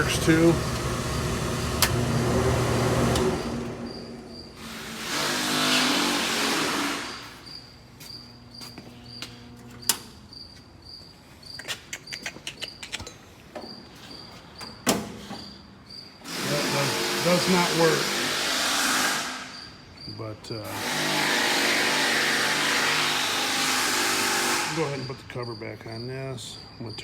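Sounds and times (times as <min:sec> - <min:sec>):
blower fan running: 0:00.0 - 0:07.4, 0:16.2 - 0:19.4
cricket chirping: 0:03.4 - 0:04.6, 0:07.1 - 0:16.3, 0:19.4 - 0:20.6, 0:24.8 - 0:27.0.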